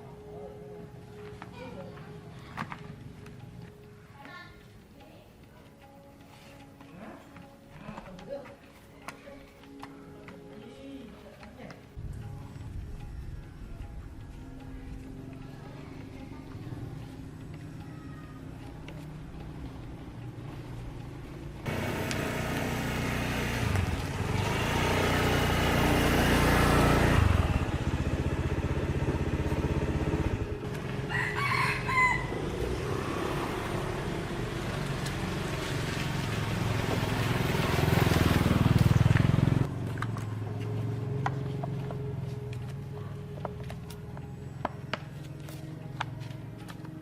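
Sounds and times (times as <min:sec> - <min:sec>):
small engine running: 0:21.7 - 0:31.0
rooster crowing: 0:31.0 - 0:32.8.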